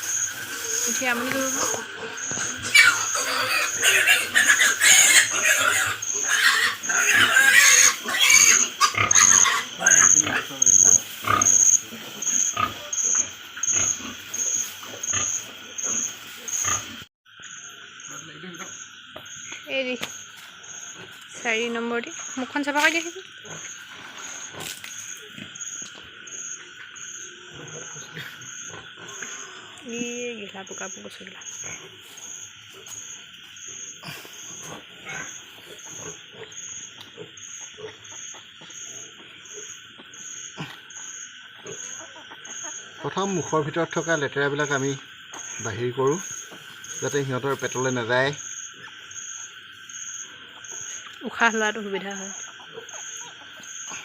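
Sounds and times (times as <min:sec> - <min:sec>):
pigs grunting and squealing: 0:00.0 - 0:17.1, 0:23.4 - 0:25.6, 0:26.6 - 0:29.9, 0:33.7 - 0:39.8, 0:40.4 - 0:49.6, 0:52.3 - 0:54.0
insects chirring: 0:00.0 - 0:54.0.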